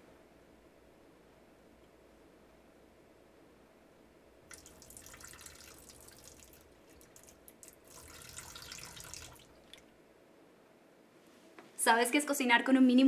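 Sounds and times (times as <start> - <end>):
water pouring and splashing: 4.5 - 9.9.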